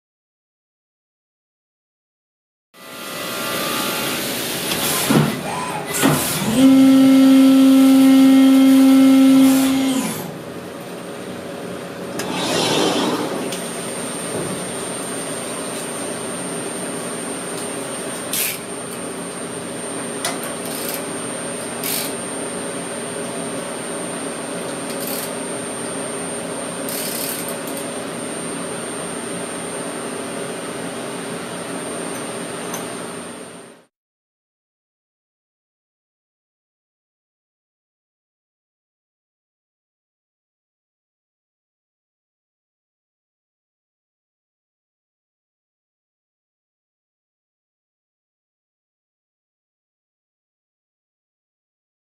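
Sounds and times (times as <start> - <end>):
loud pitched machining tone: 2.8 - 10.3, 12.2 - 13.6.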